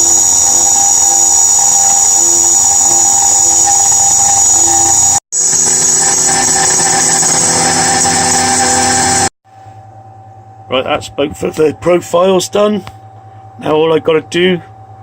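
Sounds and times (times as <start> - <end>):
cnc router milling metal whine: 0.0 - 9.3.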